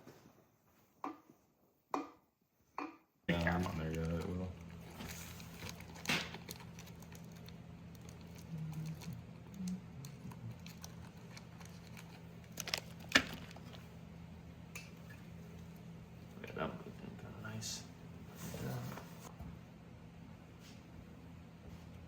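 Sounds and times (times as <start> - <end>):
steady low hum: 3.3 - 22.0.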